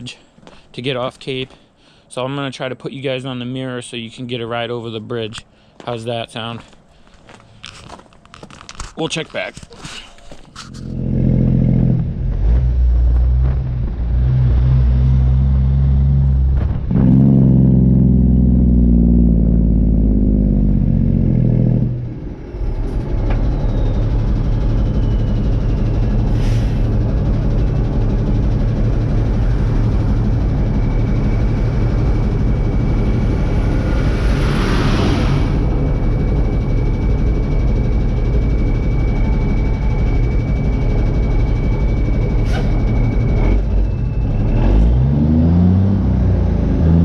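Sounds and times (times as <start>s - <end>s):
diesel truck accelerating: 10.4s - 47.0s.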